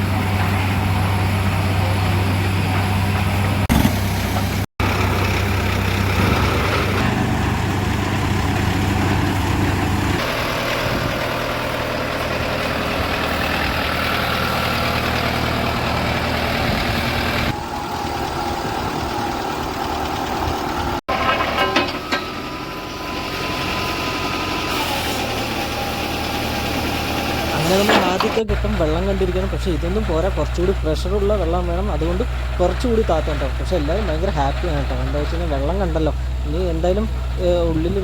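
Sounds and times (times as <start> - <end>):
heavy engine drone: 0.0 - 38.0.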